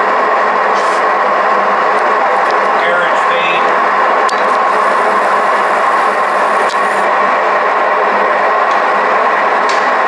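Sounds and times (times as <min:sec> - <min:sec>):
lathe running: 0:03.8 - 0:07.3.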